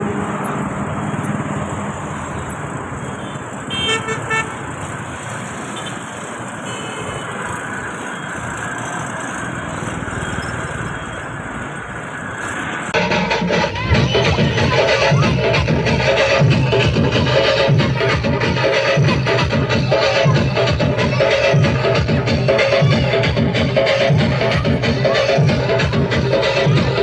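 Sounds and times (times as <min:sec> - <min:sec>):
road vehicle running: 0:00.0 - 0:27.0
horn tooting: 0:03.2 - 0:04.6, 0:13.0 - 0:27.0.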